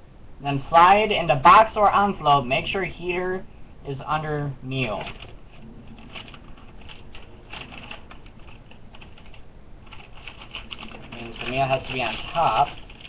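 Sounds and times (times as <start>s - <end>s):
plastic packaging crinkling: 4.9s - 13.0s.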